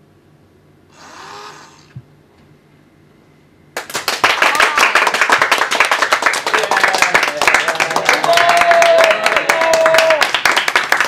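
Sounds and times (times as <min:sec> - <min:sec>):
hands clapping in applause: 0:03.8 - 0:11.0.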